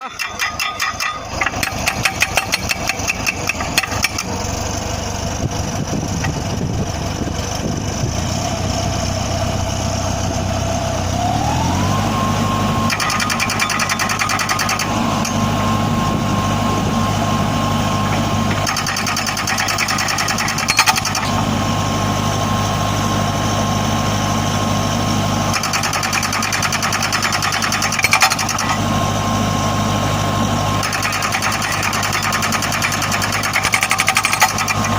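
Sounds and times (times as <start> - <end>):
hydraulic breaker hammer striking: 0.0 - 4.3, 12.9 - 15.4, 18.1 - 21.4, 25.5 - 28.8, 30.8 - 34.9
machine rattling: 0.0 - 4.4, 18.6 - 21.4, 25.5 - 28.8, 30.8 - 34.9
diesel engine running: 0.0 - 34.9.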